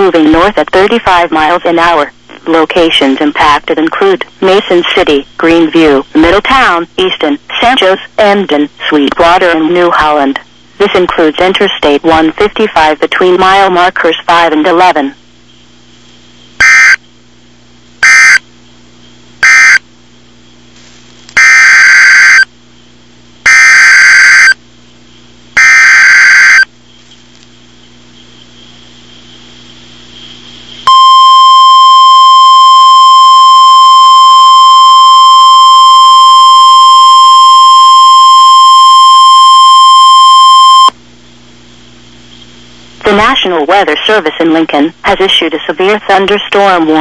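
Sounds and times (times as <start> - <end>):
steady warning alarm tone: 18.0 - 18.4, 19.4 - 19.8, 21.4 - 22.5, 23.5 - 24.6, 25.6 - 26.7, 30.8 - 40.9
buzzing data bursts: 25.6 - 40.9.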